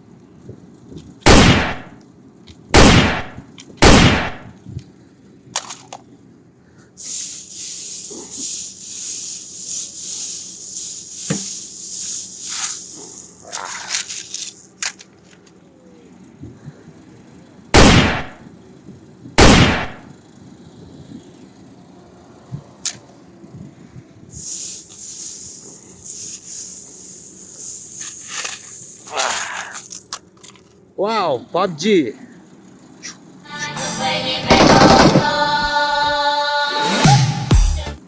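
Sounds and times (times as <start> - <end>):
toy gun shots: 1.3 - 2.0, 2.8 - 4.6, 17.8 - 18.4, 19.4 - 20.1, 34.5 - 35.3
high hissing: 6.8 - 14.8, 24.3 - 30.1.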